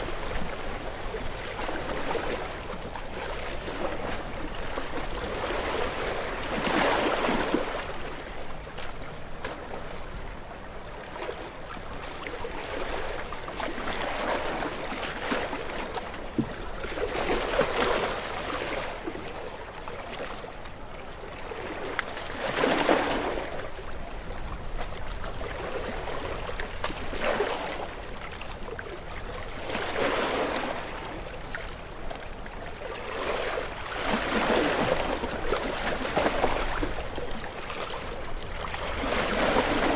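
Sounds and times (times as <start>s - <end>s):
waves breaking on rocky shore: 32.7s - 39.9s.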